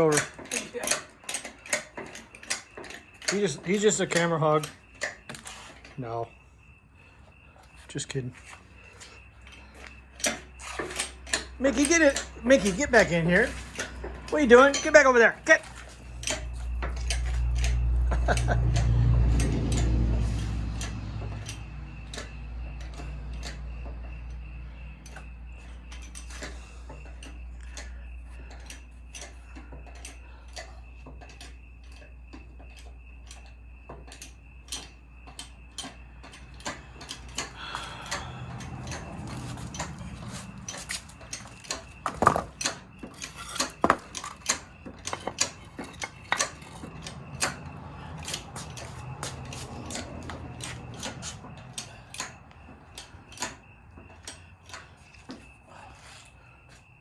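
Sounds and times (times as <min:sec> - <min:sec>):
hydraulic jack metallic clicks: 0:00.0 - 0:06.0, 0:09.4 - 0:24.4, 0:25.0 - 0:55.5
loud metal knocks: 0:41.4 - 0:46.6.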